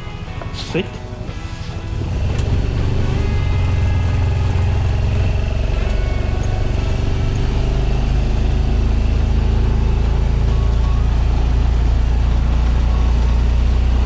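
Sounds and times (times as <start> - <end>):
vehicle engine rumble: 0.0 - 14.0
wind buffeting microphone: 0.0 - 14.0.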